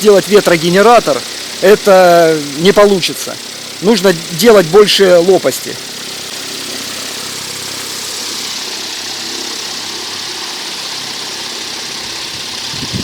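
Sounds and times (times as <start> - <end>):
faint motor hum: 0.0 - 13.0.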